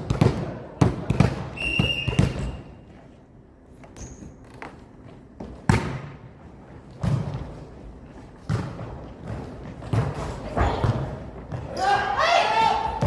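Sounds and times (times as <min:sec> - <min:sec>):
volleyball thudding: 0:05.4 - 0:06.2.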